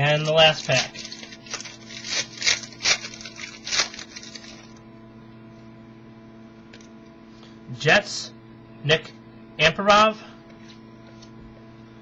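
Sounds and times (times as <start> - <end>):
faint steady hum: 0.0 - 12.0
wrapper ripping: 0.2 - 4.8.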